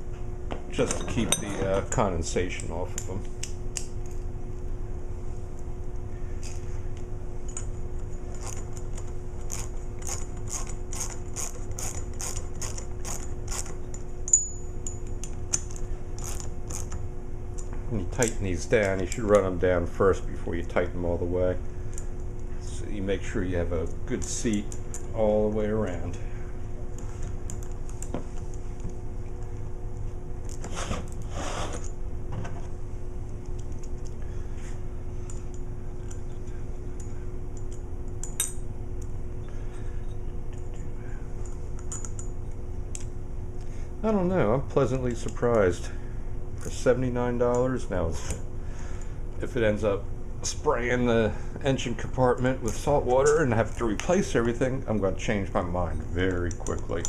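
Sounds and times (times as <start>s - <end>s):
steady background hum: 0.0s - 57.0s
hand tool rasping turns: 9.4s - 13.8s.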